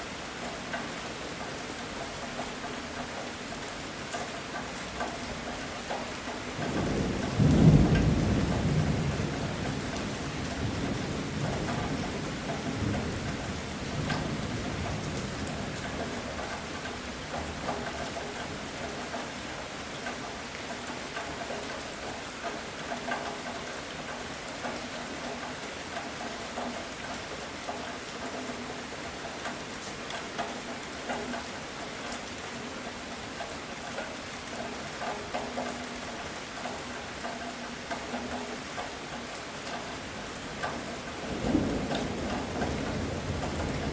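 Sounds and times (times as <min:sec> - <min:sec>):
heavy rain falling: 0:00.0 - 0:43.9
thunderclap rumbling: 0:06.6 - 0:13.3, 0:41.2 - 0:43.9.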